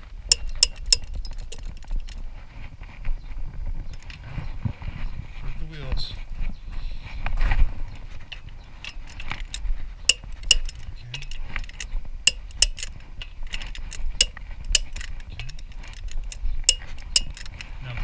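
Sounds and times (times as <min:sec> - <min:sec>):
ringing metallic clicks: 0:00.3 - 0:02.2, 0:08.3 - 0:17.7
torque wrench ratchet clicks: 0:00.3 - 0:02.2, 0:08.9 - 0:17.6.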